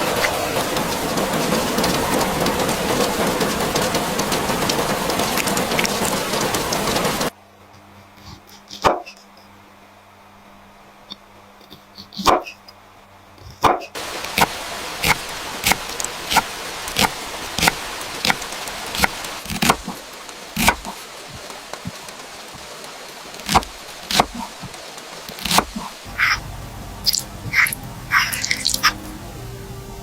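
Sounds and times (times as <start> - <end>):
steady hiss: 0.0 - 13.3, 14.0 - 30.0
knife chopping on cutting board: 14.4 - 20.0, 20.6 - 21.0, 23.5 - 25.9.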